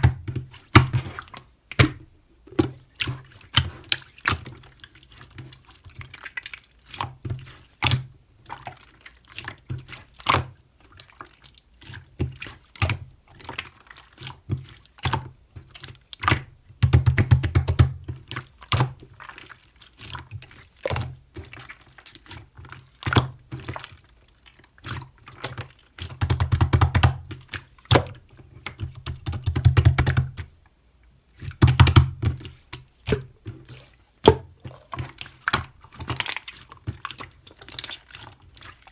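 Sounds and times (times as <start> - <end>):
slime squelching and popping: 24.8 - 30.5, 31.4 - 38.8.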